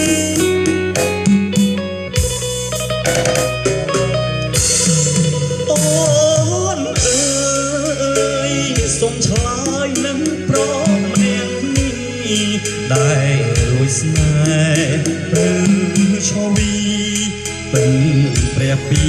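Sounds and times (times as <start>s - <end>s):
pop song with guitar and band: 0.0s - 19.0s
person singing: 4.5s - 19.0s.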